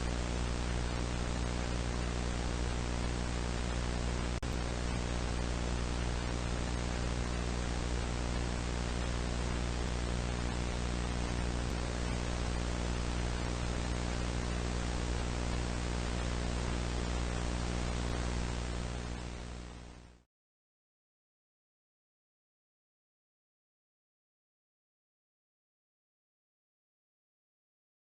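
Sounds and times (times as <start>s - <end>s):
low electrical hum: 0.0s - 20.2s
static hiss: 0.0s - 20.2s.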